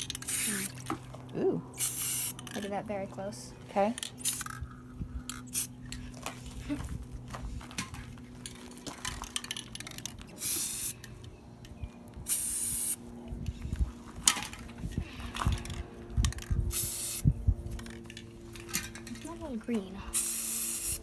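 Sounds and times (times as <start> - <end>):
spray can hissing: 0.2 - 0.8, 1.8 - 2.4, 4.2 - 4.5, 10.4 - 10.9, 12.3 - 13.0, 16.7 - 17.2, 20.2 - 21.0.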